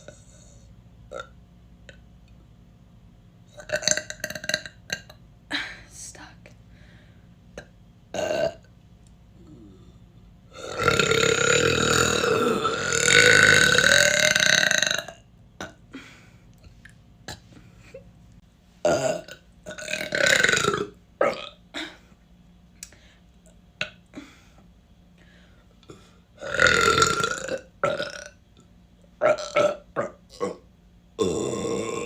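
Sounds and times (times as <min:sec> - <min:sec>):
person burping: 0:01.1 - 0:02.0, 0:03.5 - 0:05.2, 0:07.6 - 0:08.7, 0:09.4 - 0:16.0, 0:18.8 - 0:22.1, 0:25.8 - 0:28.4, 0:29.2 - 0:32.0.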